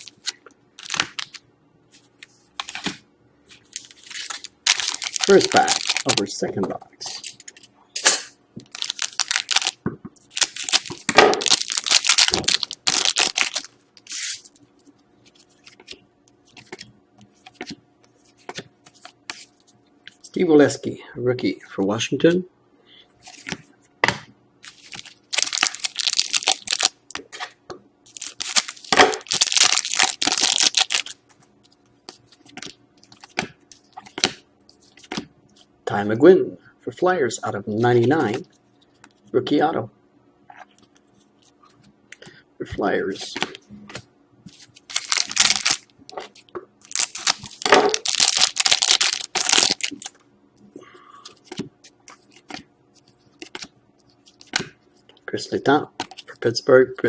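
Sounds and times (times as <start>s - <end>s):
foil wrapper crinkling and tearing: 0.0s - 1.4s, 3.6s - 6.3s, 8.6s - 14.6s, 24.6s - 27.2s, 28.1s - 31.2s, 44.5s - 50.2s.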